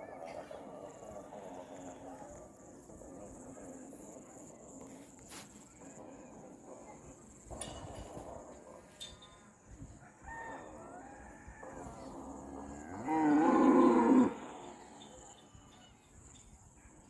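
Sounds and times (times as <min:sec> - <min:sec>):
cow mooing: 0:12.1 - 0:15.1.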